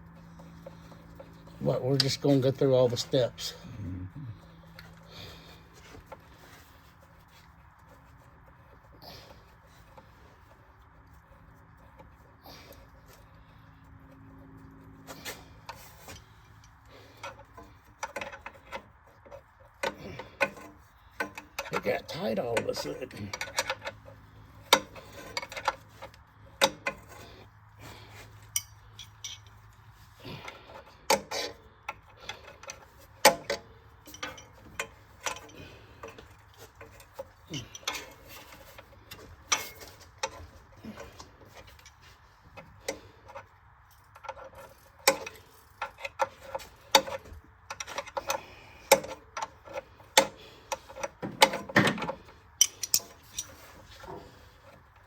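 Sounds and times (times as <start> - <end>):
hand tools clinking on metal: 0.3 - 3.6, 28.1 - 43.5, 44.1 - 54.8.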